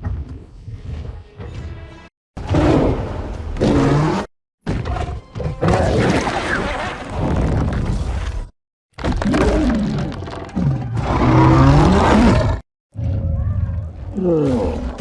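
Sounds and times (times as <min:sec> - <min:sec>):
giant ape roaring: 0:10.7 - 0:15.0.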